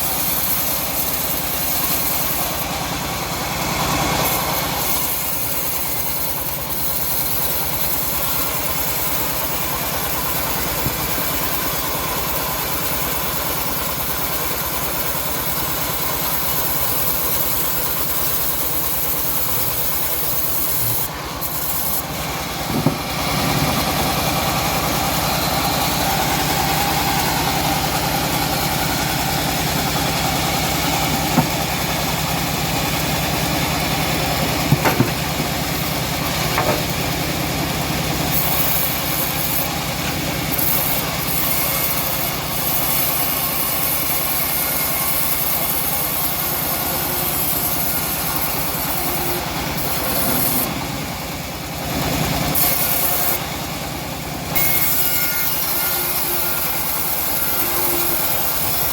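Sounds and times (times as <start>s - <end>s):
sawmill engine running: 0.0s - 58.9s
short sharp knocks: 22.7s - 23.1s, 31.2s - 31.6s.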